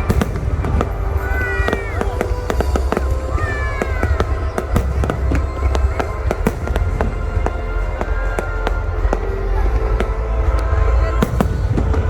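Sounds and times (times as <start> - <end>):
fireworks pops and cracks: 0.0 - 12.0
low rumble: 0.0 - 12.0.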